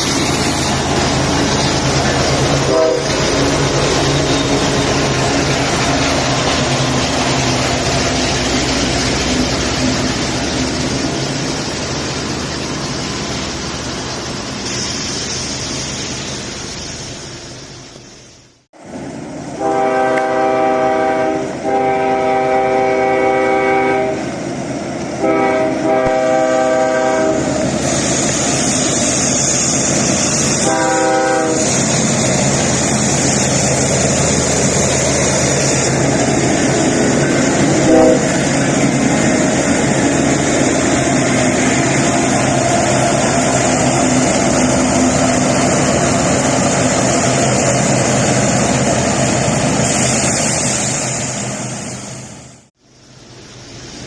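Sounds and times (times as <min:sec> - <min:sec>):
rushing water: 0:00.0 - 0:18.5
locomotive air horn blasts: 0:02.6 - 0:03.4, 0:19.6 - 0:24.3, 0:25.2 - 0:27.5, 0:30.6 - 0:31.7, 0:37.8 - 0:38.4.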